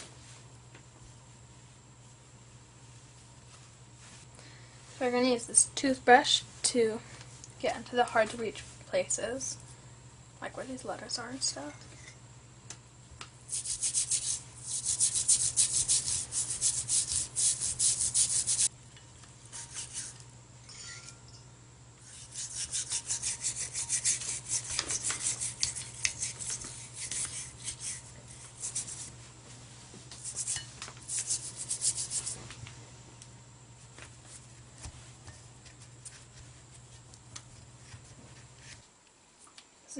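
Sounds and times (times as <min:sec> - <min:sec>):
toothbrush scrubbing metal: 0:13.5 - 0:18.7, 0:19.5 - 0:20.2, 0:22.0 - 0:29.1, 0:30.2 - 0:32.4.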